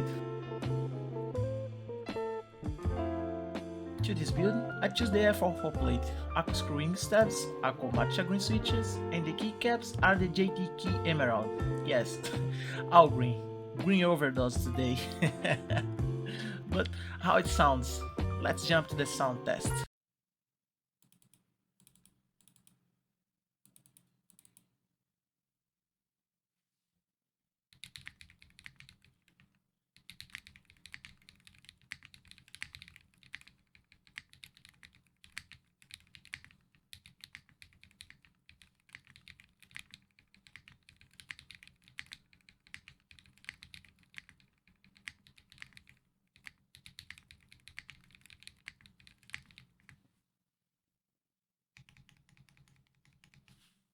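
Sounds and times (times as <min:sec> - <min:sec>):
mechanical keyboard typing: 0:27.8 - 0:50.0, 0:51.8 - 0:53.5.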